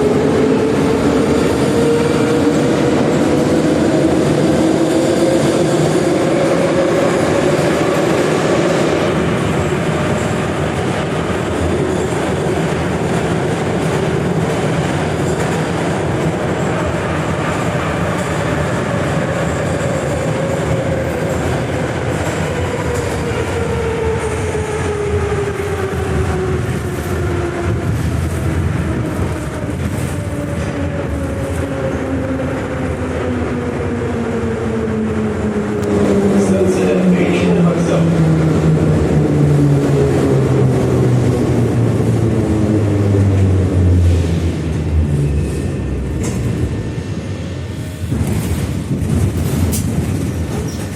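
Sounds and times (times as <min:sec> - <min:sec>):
wheels rumbling on rails: 0:00.0 - 0:50.9.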